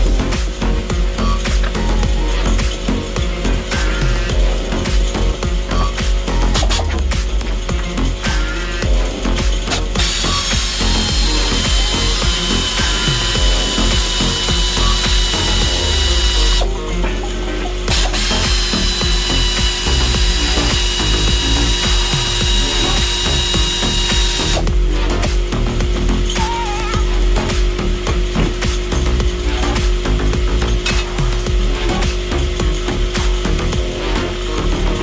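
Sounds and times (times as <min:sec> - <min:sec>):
ratchet wrench clicking: 0:00.0 - 0:16.7, 0:17.9 - 0:33.8.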